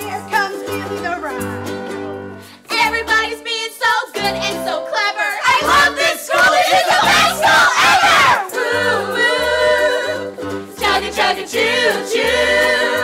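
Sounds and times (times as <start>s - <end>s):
instrumental backing with bass line: 0.0s - 3.6s, 5.5s - 13.0s
group of voices singing: 2.7s - 13.0s.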